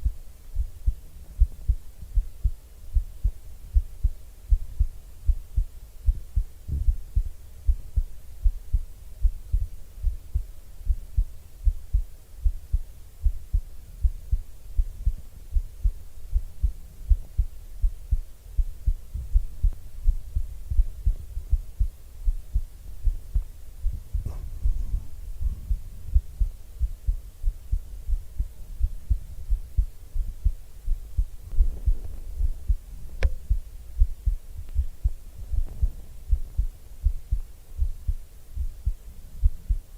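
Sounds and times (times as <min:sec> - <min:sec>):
heartbeat thumps: 0:00.0 - 0:39.9
faint click or rustle: 0:33.1 - 0:33.4.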